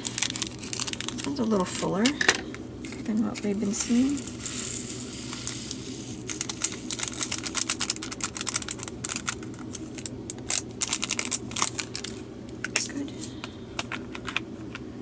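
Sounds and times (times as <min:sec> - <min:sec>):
plastic packet crinkling: 0:00.0 - 0:01.7, 0:03.6 - 0:12.2
tiny beads clattering into container: 0:03.7 - 0:09.4.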